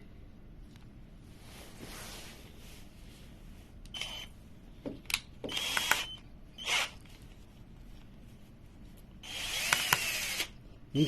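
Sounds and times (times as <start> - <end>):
cordless drill whirring: 3.9 - 4.3, 5.4 - 7.0, 9.2 - 10.6
drill chuck clicks: 5.0 - 6.9, 9.3 - 10.5.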